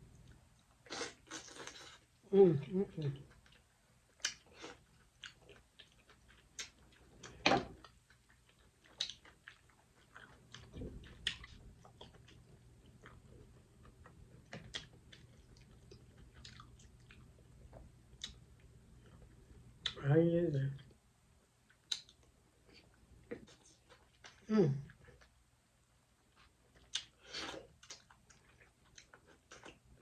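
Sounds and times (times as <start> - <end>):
person chewing mussels: 0.2 - 2.1, 2.9 - 20.0, 26.3 - 30.0.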